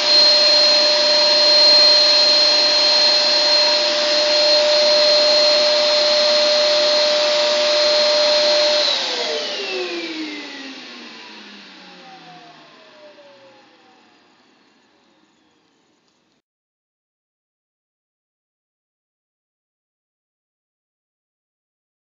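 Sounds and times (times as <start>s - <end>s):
vacuum cleaner running: 0.0s - 16.3s
vacuum motor winding down: 0.0s - 16.4s.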